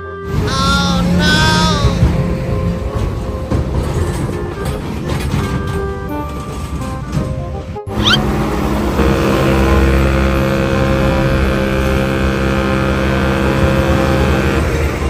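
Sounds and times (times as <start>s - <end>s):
large vehicle engine running: 7.9s - 15.0s
short rising whistle: 8.0s - 8.3s.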